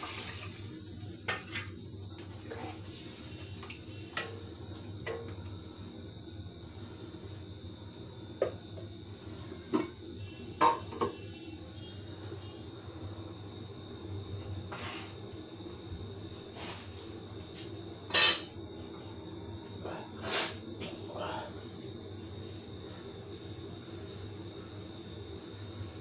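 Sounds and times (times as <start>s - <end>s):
utensils clinking against pots: 18.1s - 18.6s.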